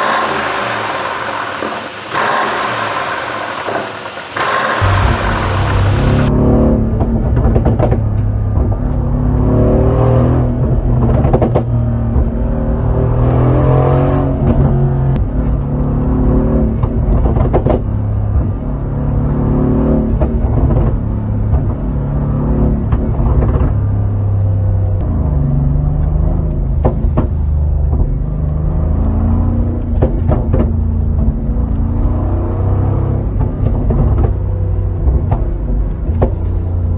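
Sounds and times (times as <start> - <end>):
sharp exhaust pops: 0.0 - 6.3
car exhaust revving: 0.0 - 6.6.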